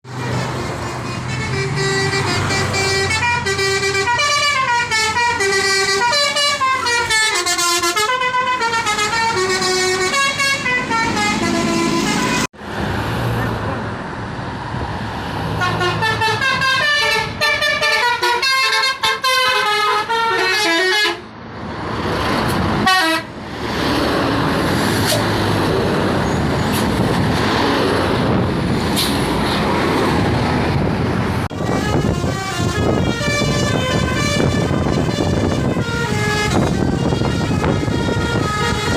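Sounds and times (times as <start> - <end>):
road and engine noise: 0.0 - 38.9
bus horn playing a tune: 0.1 - 12.5, 15.6 - 21.3, 22.8 - 23.4, 31.5 - 38.9.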